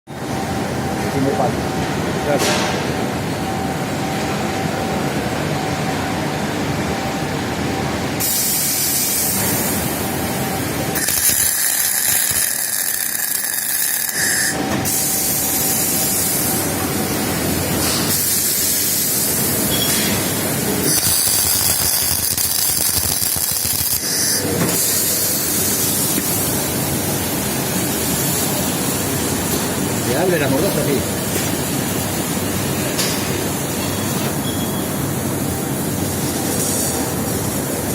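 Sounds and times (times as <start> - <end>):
steady machine hum: 0.1 - 37.9
welding arc hissing and crackling: 8.2 - 33.7.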